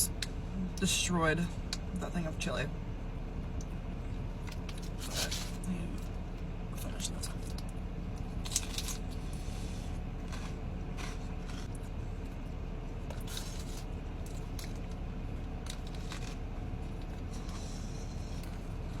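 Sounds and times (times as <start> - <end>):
steady low hum: 0.0 - 19.0
person chewing: 7.2 - 19.0.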